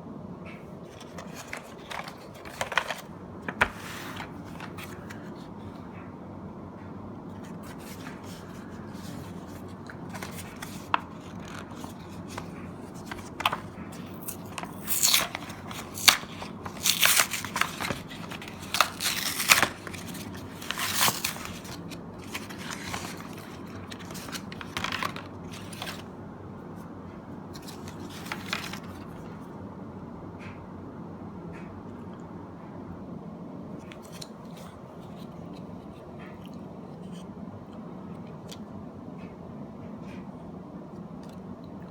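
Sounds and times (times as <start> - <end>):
low steady hum: 0.0 - 41.9
wrapper tearing and crinkling: 7.6 - 26.0.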